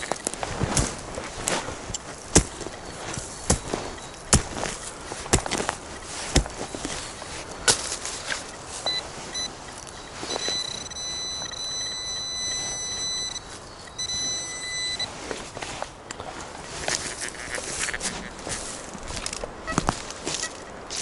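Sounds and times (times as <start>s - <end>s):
metal detector beeping tone: 1.4s - 15.3s, 19.2s - 21.0s
sharp knocks: 2.3s - 2.7s.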